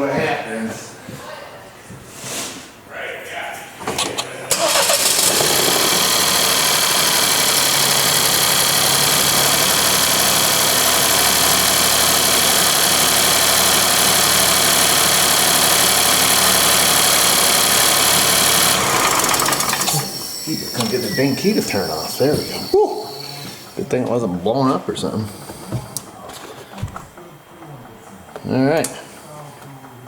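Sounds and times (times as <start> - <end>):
car engine running: 4.5 - 22.7.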